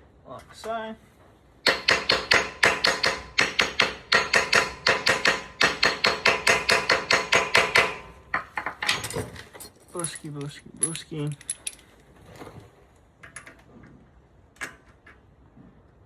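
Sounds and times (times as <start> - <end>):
hammer striking metal: 1.7 - 9.2.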